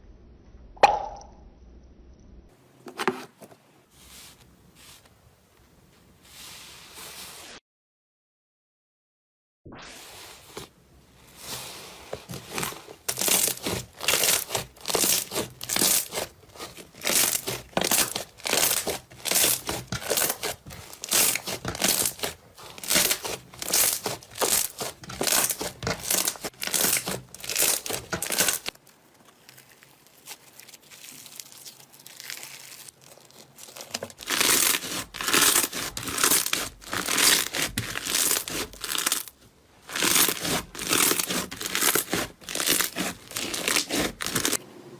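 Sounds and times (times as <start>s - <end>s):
slime squishing by hand: 10.0s - 44.6s.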